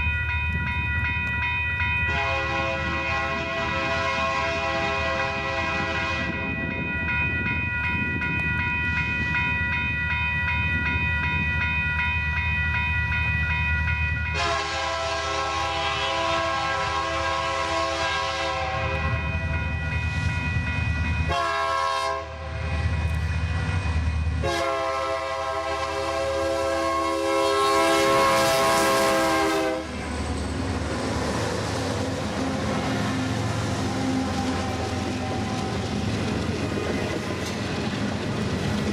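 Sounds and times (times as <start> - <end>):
train rolling: 0.0 - 38.9
locomotive air horn blasts: 2.1 - 6.4, 14.3 - 19.1, 21.3 - 22.6, 24.4 - 30.0.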